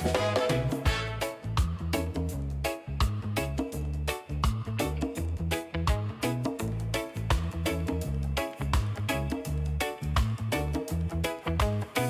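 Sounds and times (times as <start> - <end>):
background music with beat: 0.0 - 12.0.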